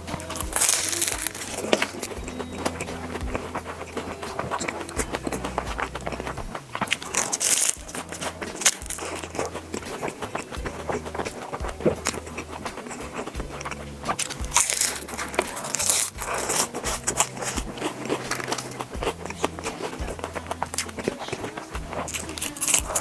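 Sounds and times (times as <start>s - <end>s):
biting and chewing crunches: 0.0s - 23.0s
mouth clicks: 0.0s - 23.0s.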